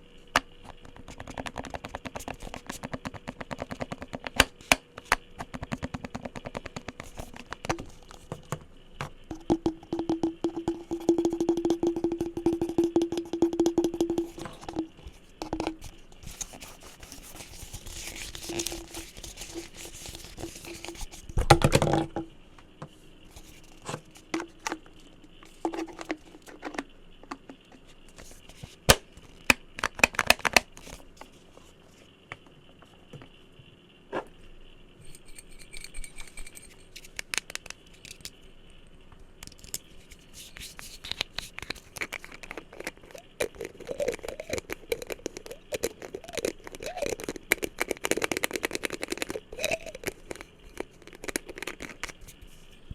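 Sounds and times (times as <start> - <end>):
fingers tapping and scratching objects: 0.4 - 8.6, 9.3 - 21.9, 23.3 - 31.3, 39.5 - 52.4.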